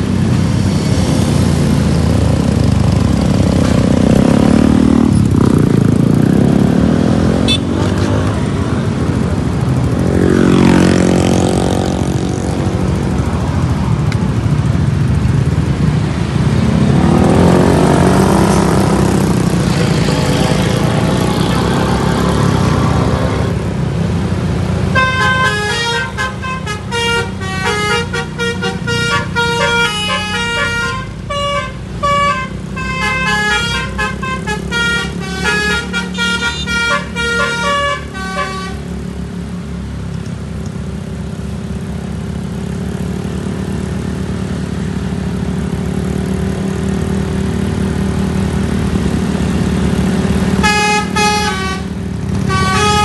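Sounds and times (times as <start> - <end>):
multi-tone musical bus horn: 7.4 - 7.8, 24.9 - 38.9, 50.6 - 53.0
bus engine revving: 14.0 - 38.7.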